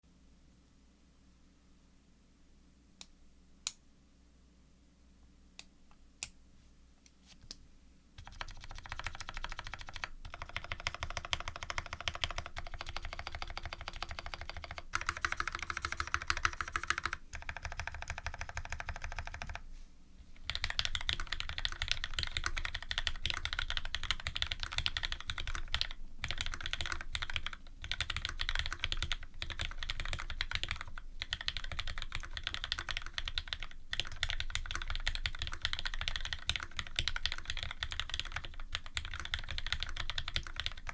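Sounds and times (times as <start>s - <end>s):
mechanical keyboard typing: 8.2s - 19.6s, 20.4s - 40.9s.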